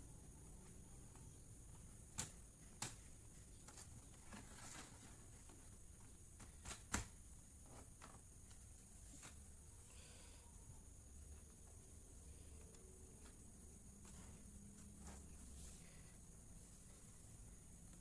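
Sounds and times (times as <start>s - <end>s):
small clicks and taps: 2.1s - 3.9s.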